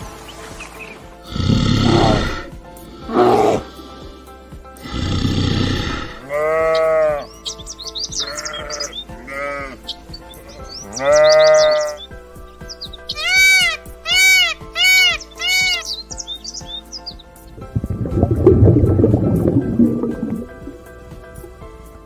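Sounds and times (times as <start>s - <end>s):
background music: 0.0s - 22.0s
rough noisy animal call: 1.2s - 4.1s, 4.8s - 17.8s
farm animal bleating: 4.9s - 12.1s, 12.8s - 16.8s.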